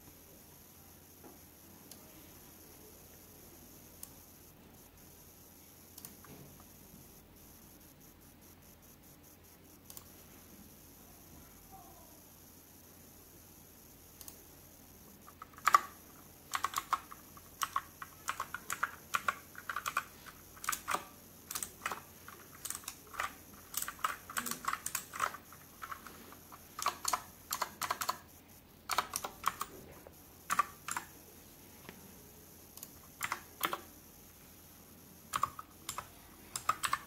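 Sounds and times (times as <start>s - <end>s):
mechanical keyboard typing: 15.2s - 29.8s, 30.4s - 31.2s, 32.8s - 33.9s, 35.3s - 37.0s.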